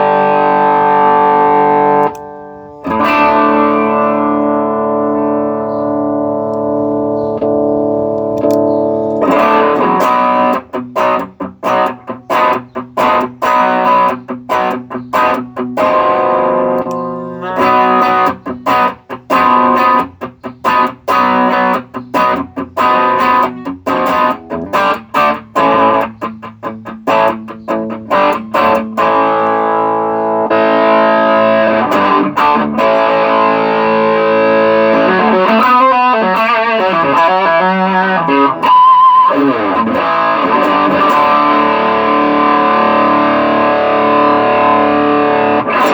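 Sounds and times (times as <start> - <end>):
overdriven electric guitar chords: 0.0 - 45.9.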